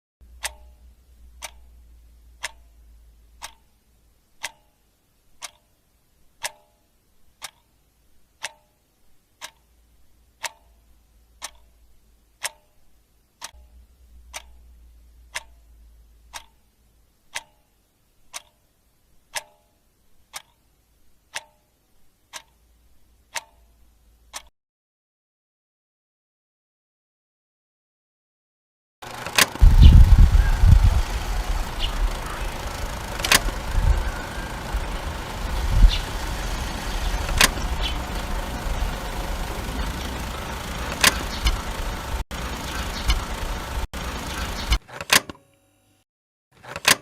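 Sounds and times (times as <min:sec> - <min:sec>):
clock ticking: 0:00.3 - 0:03.8, 0:04.4 - 0:04.6, 0:10.4 - 0:10.7, 0:11.4 - 0:11.7, 0:13.4 - 0:15.7, 0:16.3 - 0:16.6, 0:17.3 - 0:17.6, 0:23.3 - 0:23.7, 0:29.0 - 0:44.8
low rumble: 0:29.6 - 0:44.8.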